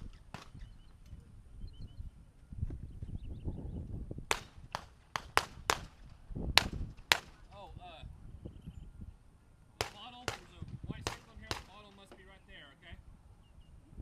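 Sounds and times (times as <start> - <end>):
handgun shots: 4.3 - 6.0, 6.6 - 7.4, 9.8 - 12.1.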